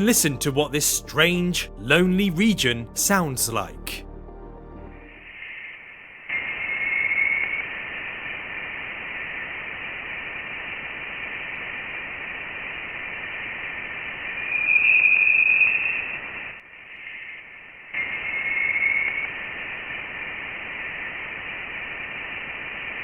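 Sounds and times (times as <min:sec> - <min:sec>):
static-like hiss: 0:05.0 - 0:23.0.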